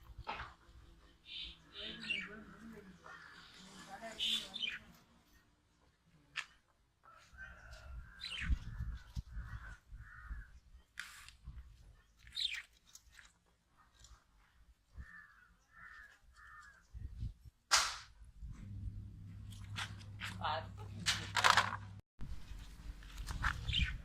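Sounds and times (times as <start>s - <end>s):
lovebirds chirping and screeching: 1.2s - 5.0s, 7.7s - 10.6s, 12.2s - 12.8s, 23.5s - 24.0s
low rumble: 18.3s - 20.2s.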